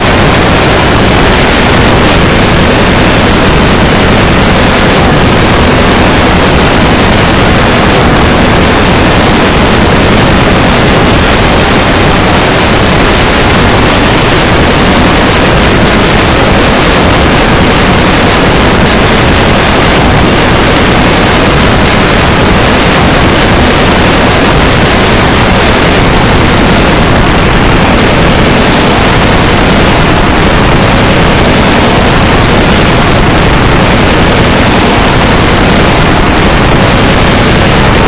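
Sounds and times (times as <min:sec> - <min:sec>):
distorted alert tone static: 0:00.0 - 0:38.0.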